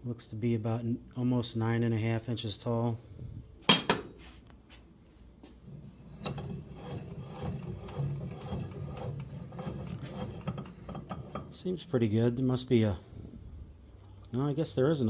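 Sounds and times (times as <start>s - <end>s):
sharp metal clank: 3.7s - 4.2s
vise screw rubbing and ticking: 5.7s - 11.9s.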